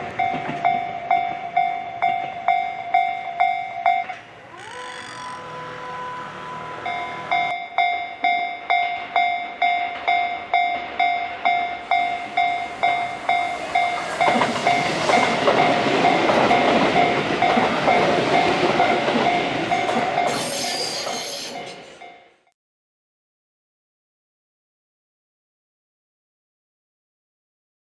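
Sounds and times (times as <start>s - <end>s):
train wheel noise: 0.0s - 22.1s
level crossing bell ringing: 0.7s - 17.2s.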